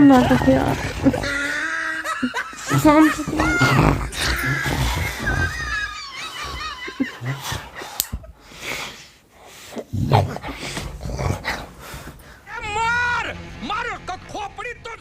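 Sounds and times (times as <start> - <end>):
man fake snoring: 0.0 - 8.0.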